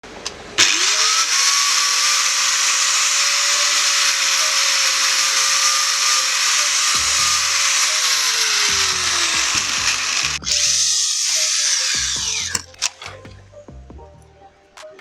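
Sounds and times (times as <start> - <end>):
angle grinder whining: 0.0 - 13.4.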